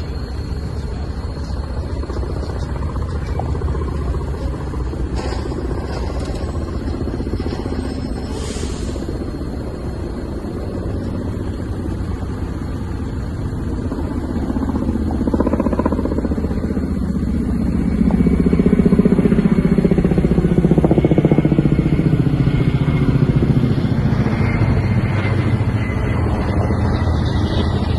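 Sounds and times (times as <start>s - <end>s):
boat engine running: 9.2s - 27.9s.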